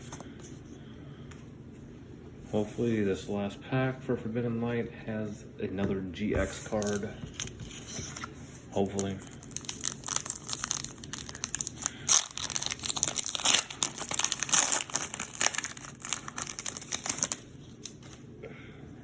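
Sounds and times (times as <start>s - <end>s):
plastic packaging torn and crinkled: 6.7s - 18.2s.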